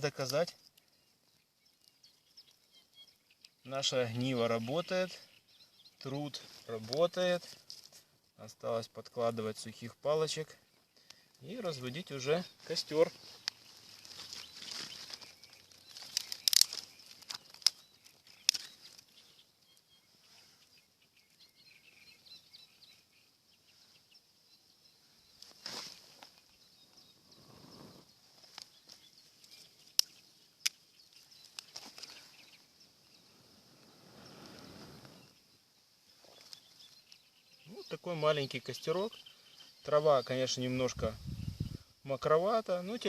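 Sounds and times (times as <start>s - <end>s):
twigs rustling and snapping: 0.0s - 4.8s, 6.0s - 8.2s, 10.8s - 19.9s, 25.3s - 27.0s, 28.2s - 32.6s, 36.1s - 37.3s
insect chirring: 11.6s - 19.8s, 25.3s - 35.5s.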